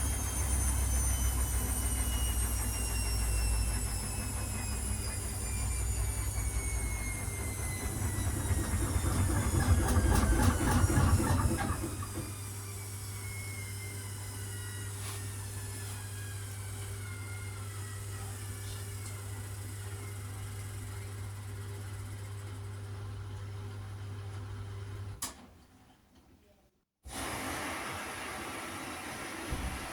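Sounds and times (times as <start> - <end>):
washing machine motor whine: 0.0 - 25.2, 27.1 - 29.9
washing machine rattling and banging: 7.2 - 12.4.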